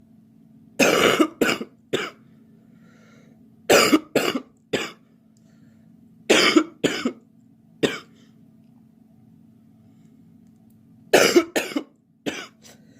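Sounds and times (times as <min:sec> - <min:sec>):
girl coughing: 0:00.8 - 0:02.2, 0:03.7 - 0:05.0, 0:06.3 - 0:07.2, 0:07.8 - 0:08.1, 0:11.2 - 0:12.6.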